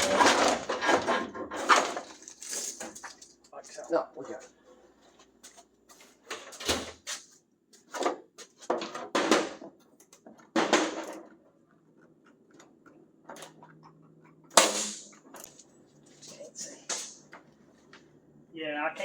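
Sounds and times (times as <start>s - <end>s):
tools scraping and clattering: 0.0s - 3.5s, 12.2s - 17.5s.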